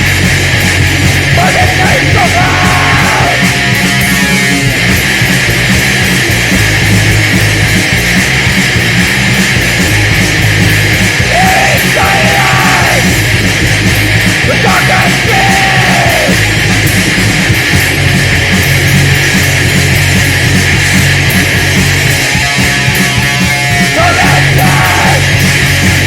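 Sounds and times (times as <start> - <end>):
heavily distorted heavy music: 0.0 - 26.0.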